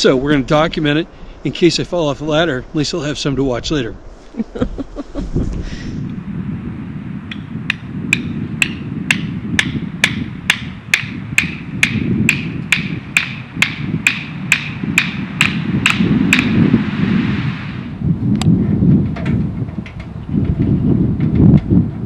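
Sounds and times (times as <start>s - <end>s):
wind noise on microphone: 0.0s - 22.0s
sharp evenly spaced clicks: 7.7s - 16.6s.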